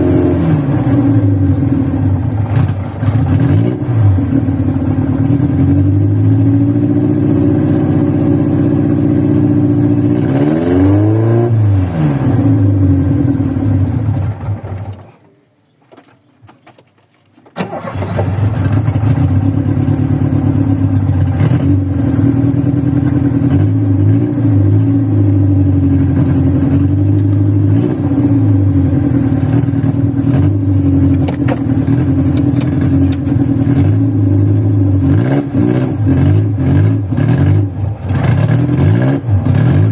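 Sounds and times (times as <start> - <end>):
car engine idling rough: 0.7 - 7.1, 12.5 - 15.7, 17.6 - 35.1.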